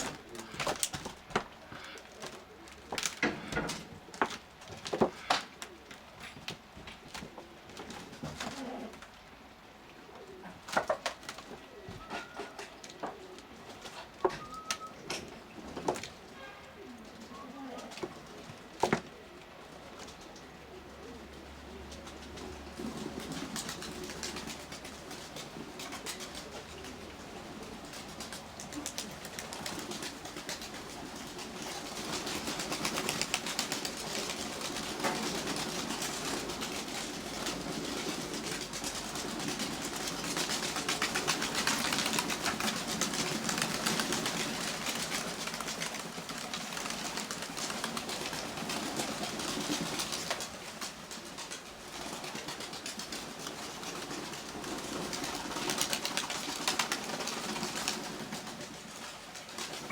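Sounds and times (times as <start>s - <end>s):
rain pattering: 0.0s - 3.2s, 21.8s - 59.9s
pigeons cooing: 0.0s - 59.9s.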